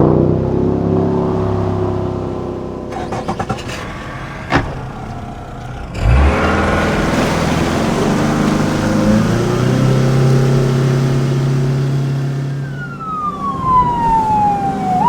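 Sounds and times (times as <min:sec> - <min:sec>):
boat engine running: 0:00.0 - 0:15.0
engine starting with a thump: 0:02.9 - 0:09.3.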